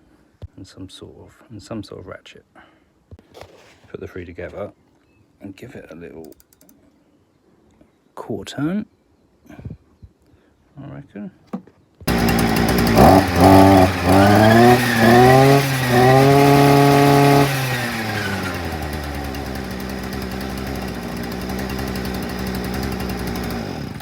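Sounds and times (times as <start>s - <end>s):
two-stroke engine revving: 12.1s - 24.0s.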